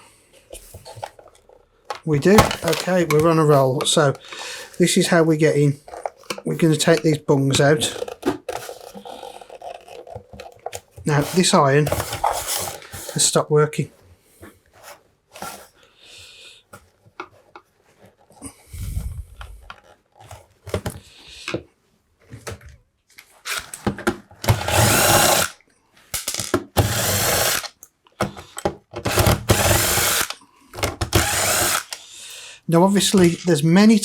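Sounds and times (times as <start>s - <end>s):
handling clicks and knocks: 0.6s - 4.9s, 5.7s - 12.9s, 33.1s - 33.6s
power drill-driver bursts: 24.5s - 25.6s, 26.8s - 27.8s, 29.1s - 30.4s, 31.0s - 32.1s.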